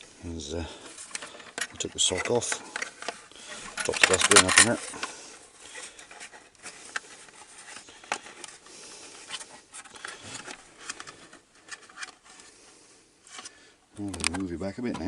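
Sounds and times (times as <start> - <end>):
light rustling: 0.0 - 15.0
sharp plastic clicks: 14.0 - 15.0.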